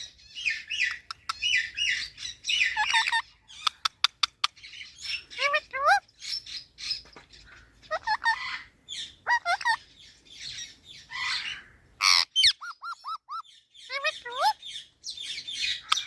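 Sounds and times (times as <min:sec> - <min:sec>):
parrot squawking: 0:00.4 - 0:06.0, 0:07.8 - 0:09.8, 0:11.1 - 0:14.6.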